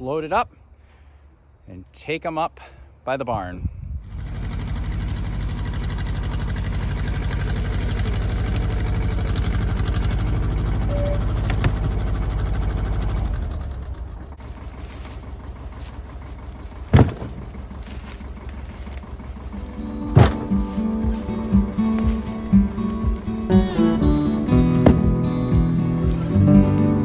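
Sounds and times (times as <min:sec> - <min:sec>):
tractor engine running: 0:04.0 - 0:27.0
sharp thump: 0:16.9 - 0:17.5, 0:20.1 - 0:23.3, 0:24.0 - 0:27.0.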